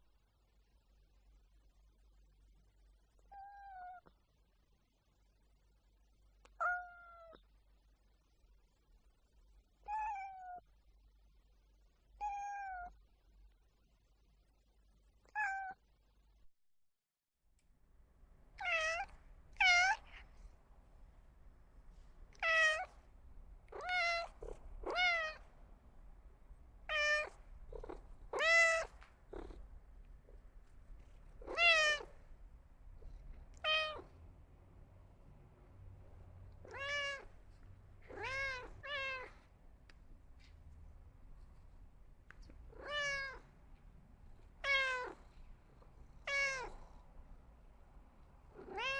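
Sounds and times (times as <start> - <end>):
cat meowing: 3.3 - 4.0, 6.6 - 7.4, 9.9 - 10.6, 12.2 - 12.9, 15.3 - 15.8, 18.6 - 20.3, 22.3 - 23.0, 23.7 - 25.5, 26.8 - 29.6, 31.1 - 32.2, 33.0 - 34.1, 36.6 - 37.4, 38.0 - 39.4, 42.7 - 43.5, 44.6 - 45.3, 46.2 - 47.0, 48.5 - 48.9.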